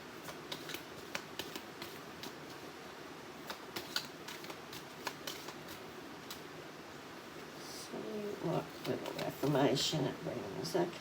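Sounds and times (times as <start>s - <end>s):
cards being shuffled: 0.2s - 2.7s, 3.4s - 6.5s, 8.6s - 9.6s.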